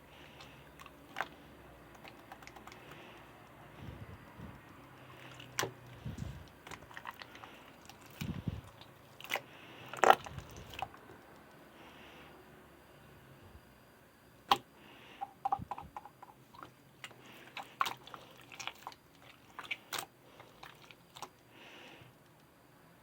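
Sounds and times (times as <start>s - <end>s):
sharp clicks and crunches: 0.2s - 3.6s.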